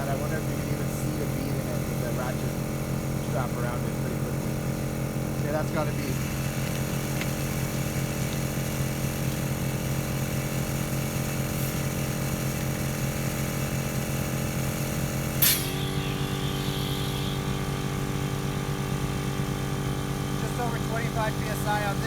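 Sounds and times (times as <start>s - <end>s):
air compressor humming: 0.0s - 22.0s
sharp click: 15.4s - 15.9s.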